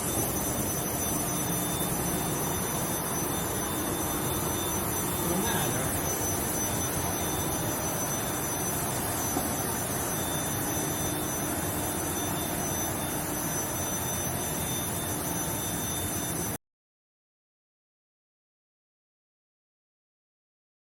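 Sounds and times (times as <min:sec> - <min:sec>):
high-pitched whine: 0:00.0 - 0:16.6.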